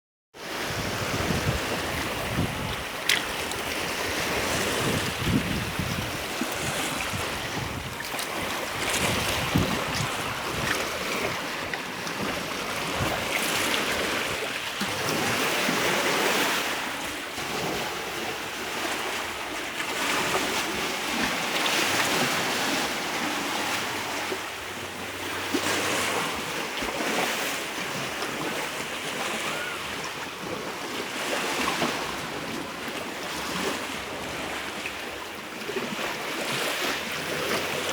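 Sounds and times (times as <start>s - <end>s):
wind buffeting microphone: 0.4s - 15.4s
ocean surf breaking: 0.4s - 26.6s.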